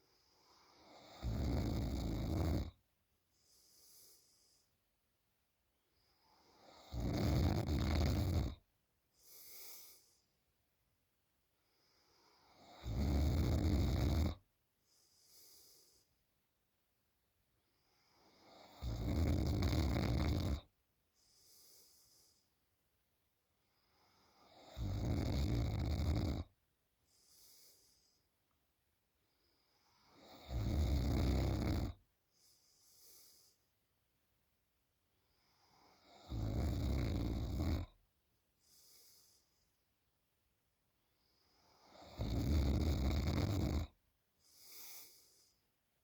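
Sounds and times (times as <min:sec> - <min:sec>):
woman snoring loudly: 0:00.8 - 0:02.8, 0:06.6 - 0:08.6, 0:12.5 - 0:14.4, 0:18.3 - 0:20.7, 0:24.4 - 0:26.5, 0:30.1 - 0:32.0, 0:35.7 - 0:38.0, 0:41.8 - 0:43.9.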